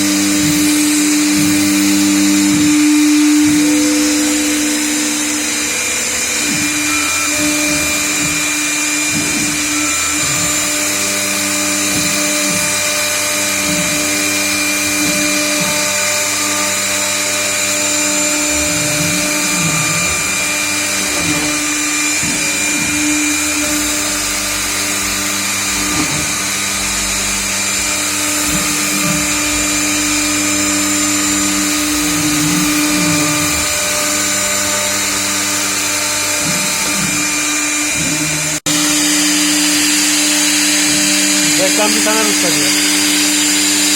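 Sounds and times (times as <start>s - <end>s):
router spindle high whine: 0.0s - 43.9s.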